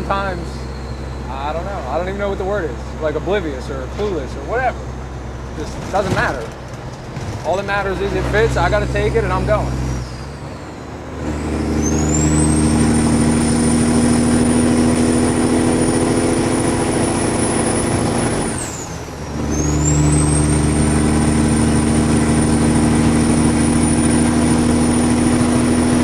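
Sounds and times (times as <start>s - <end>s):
diesel truck engine under load: 0.0s - 26.0s.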